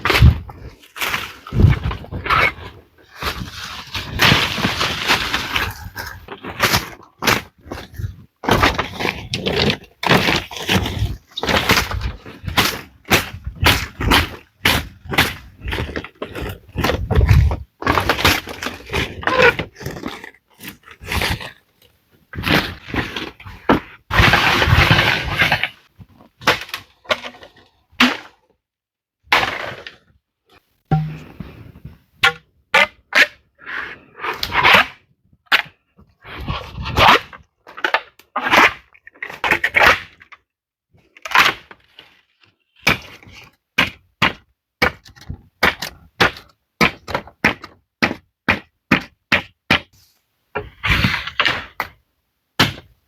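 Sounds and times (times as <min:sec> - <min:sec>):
wood cracking and crunching: 0:00.0 - 0:21.6
wood being struck: 0:30.9 - 0:31.4.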